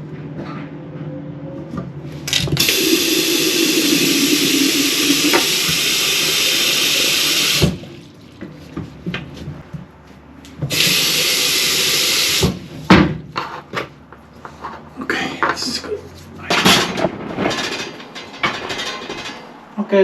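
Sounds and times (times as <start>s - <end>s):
water running from faucet: 2.6s - 8.0s, 10.7s - 12.6s.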